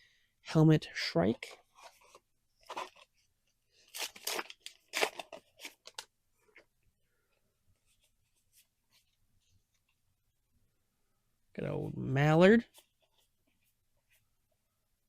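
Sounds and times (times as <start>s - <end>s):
foil wrapper tearing: 3.8s - 6.0s.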